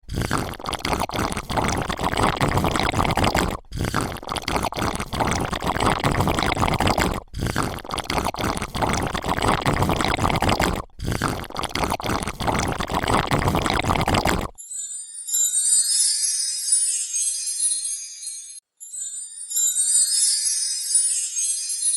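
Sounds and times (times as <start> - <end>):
wet crackly liquid sounds: 0.0 - 14.6.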